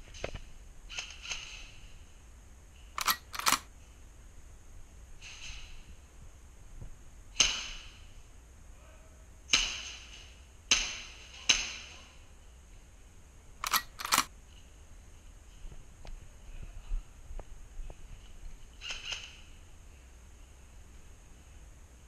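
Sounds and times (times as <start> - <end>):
thin airsoft gun cracks: 3.0 - 3.7, 13.6 - 14.3.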